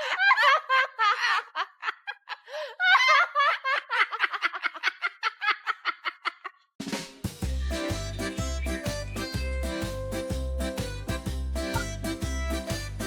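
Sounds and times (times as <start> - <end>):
high-pitched laughing: 7.5 - 13.0.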